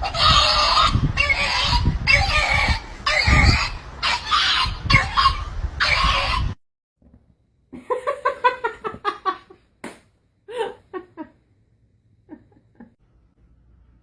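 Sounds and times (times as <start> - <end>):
high-pitched laughter: 10.5 - 11.4.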